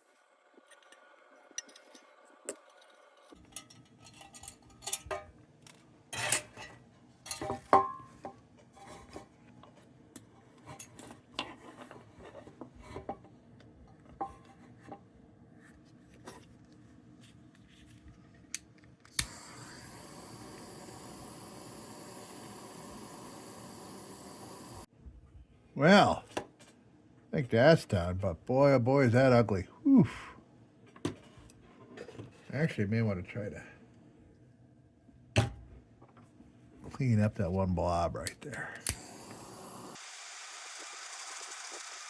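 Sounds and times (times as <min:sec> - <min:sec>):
tools clinking on metal: 0:03.4 - 0:05.3
steady hiss: 0:19.2 - 0:24.9, 0:38.9 - 0:42.0.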